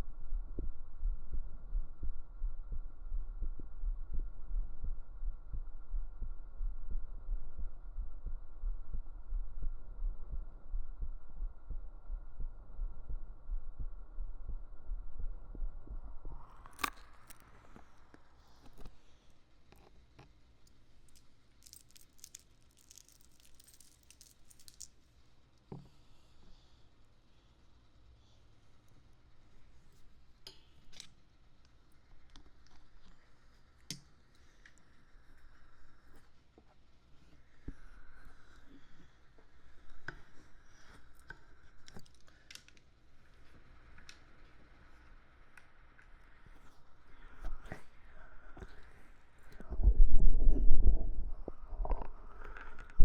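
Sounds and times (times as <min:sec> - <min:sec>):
heartbeat thumps: 0:00.0 - 0:16.5
faint hum: 0:00.0 - 0:53.0.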